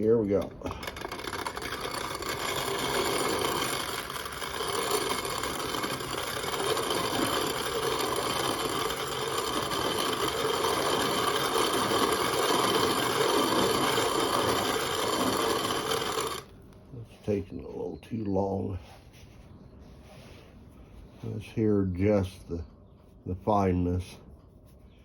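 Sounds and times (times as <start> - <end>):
hand-cranked grain mill grinding: 0.0 - 16.5.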